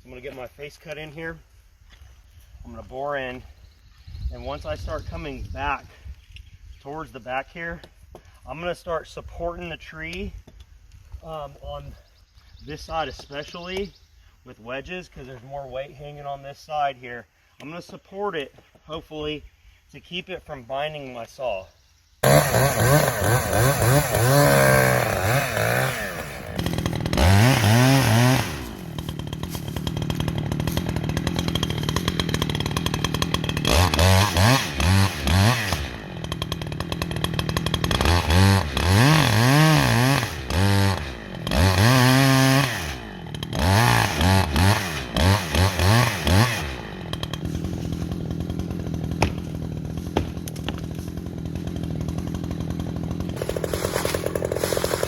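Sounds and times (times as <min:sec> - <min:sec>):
chainsaw engine revving: 0:22.2 - 0:55.0.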